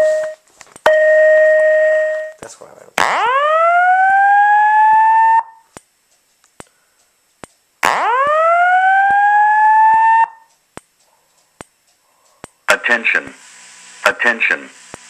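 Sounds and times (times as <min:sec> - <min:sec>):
fire alarm whoop tone: 0:03.0 - 0:05.7, 0:07.9 - 0:10.5.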